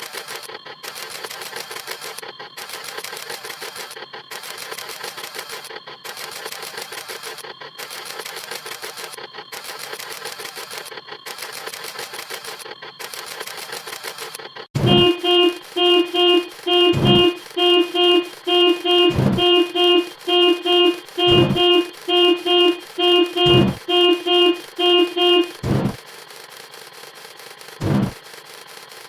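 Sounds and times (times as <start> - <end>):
camera shutter clicking rapidly: 0.0 - 14.4, 25.7 - 29.0.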